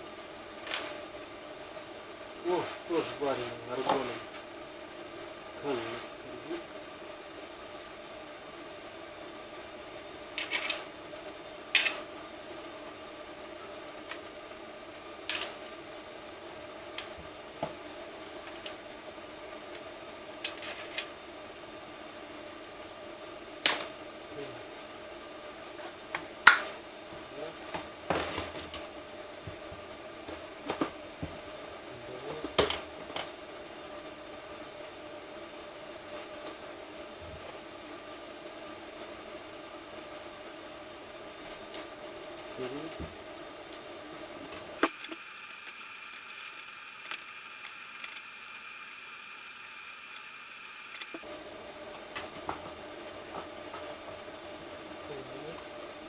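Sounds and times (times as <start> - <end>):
faint steady hum: 0.0 - 56.0
steady background hiss: 0.0 - 56.0
metal tools clinking and knocking: 11.8 - 12.0, 20.4 - 21.1, 41.4 - 43.1.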